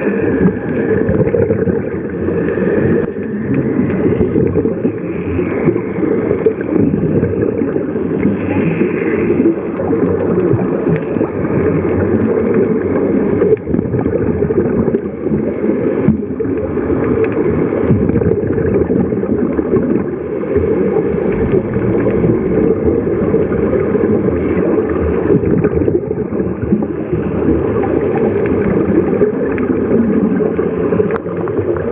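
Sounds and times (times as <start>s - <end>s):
muffled underwater noise: 0.0s - 31.9s.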